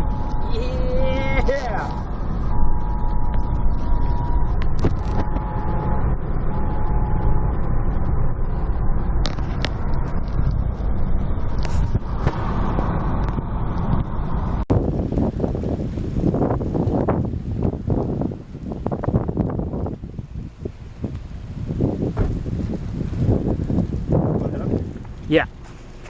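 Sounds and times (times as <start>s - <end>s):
faint steady tones: 0.0s - 14.6s
road and engine rumble: 0.0s - 26.0s
wind gusting on microphone: 0.0s - 26.0s.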